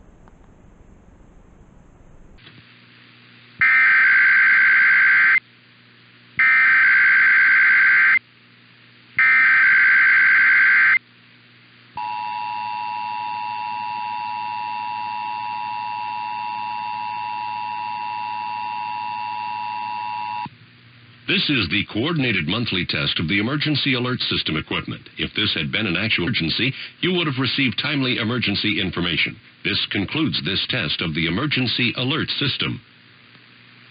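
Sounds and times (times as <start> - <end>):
warbling data tone bursts: 6.4 - 8.2, 9.2 - 11.0.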